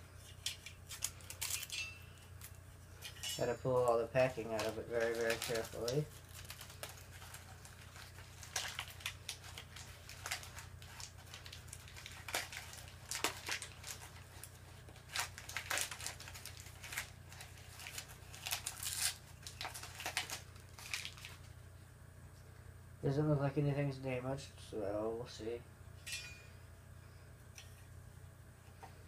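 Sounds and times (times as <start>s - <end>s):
steady low hum: 0.0s - 29.0s
packing material rustling: 0.2s - 21.5s.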